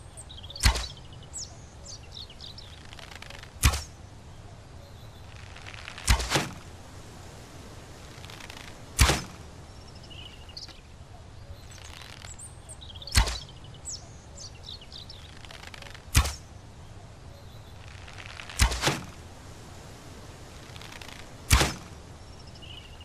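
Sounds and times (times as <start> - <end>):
birds chirping faintly: 0.0 - 23.0
arrow shots cracking: 0.6 - 1.1, 3.0 - 4.0, 5.8 - 6.8, 8.3 - 9.5, 13.1 - 13.6, 15.6 - 16.5, 18.2 - 19.3, 20.8 - 22.1.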